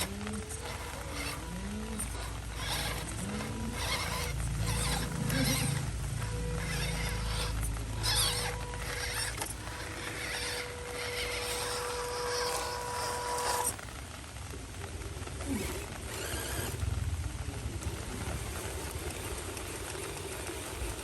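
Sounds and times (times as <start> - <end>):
small electric motor whining: 0.0 - 14.1, 14.8 - 17.0
scraping and crunching: 0.0 - 20.2.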